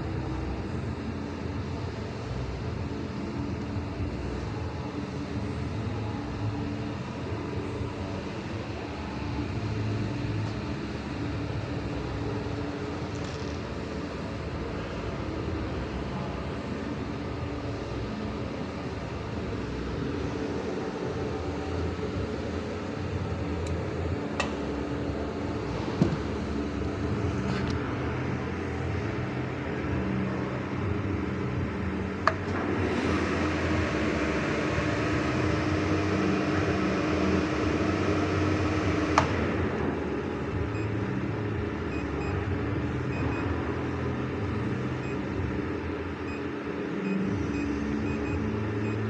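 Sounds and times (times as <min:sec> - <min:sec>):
lathe running: 0:32.0 - 0:41.8.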